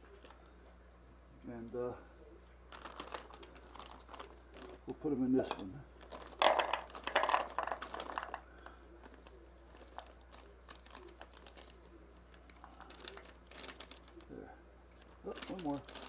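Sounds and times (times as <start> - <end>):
plastic packaging crinkling: 2.7 - 14.3, 14.9 - 16.0
tablets clicking into container: 6.2 - 8.4.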